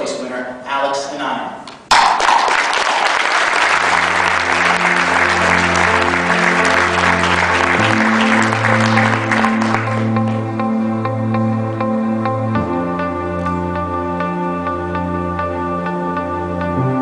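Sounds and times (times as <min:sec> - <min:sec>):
audience applauding: 0:01.9 - 0:10.6
instrumental music: 0:03.6 - 0:17.0.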